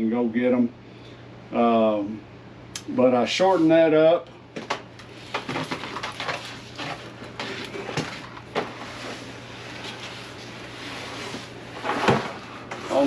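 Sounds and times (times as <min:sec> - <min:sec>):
steady low hum: 0:00.0 - 0:13.0
parts knocking and clattering: 0:04.6 - 0:08.7.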